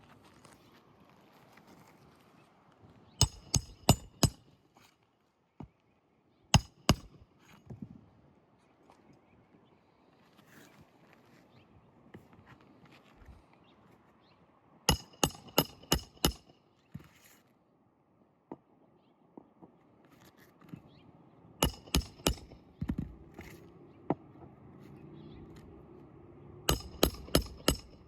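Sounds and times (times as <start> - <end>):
hammer striking roofing nails: 3.2 - 4.4, 6.6 - 7.1, 14.9 - 16.5, 21.6 - 23.0, 26.7 - 28.0.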